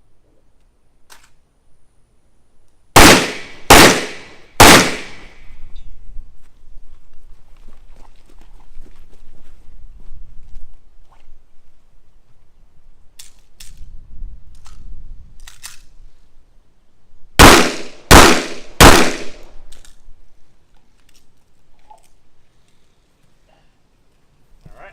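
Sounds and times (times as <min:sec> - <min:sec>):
gunshots with ring-out: 0:03.0 - 0:05.3, 0:17.4 - 0:19.4.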